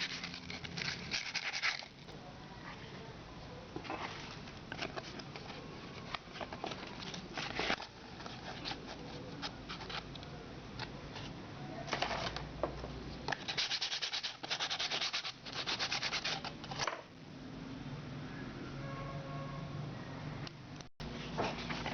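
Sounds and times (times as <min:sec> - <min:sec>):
sandpaper sanding strokes: 0:13.5 - 0:16.4.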